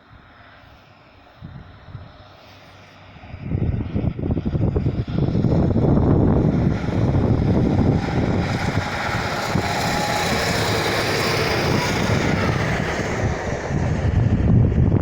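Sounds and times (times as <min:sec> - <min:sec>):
train engine rumble: 0:00.0 - 0:15.0
rushing noise: 0:02.4 - 0:15.0.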